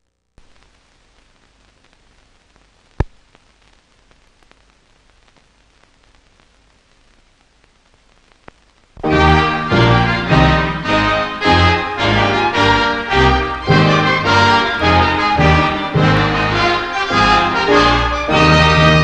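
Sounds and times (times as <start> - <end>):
film soundtrack hiss and crackle: 0.0 - 19.0
sharp pop: 3.0 - 3.2
orchestral music: 9.0 - 19.0.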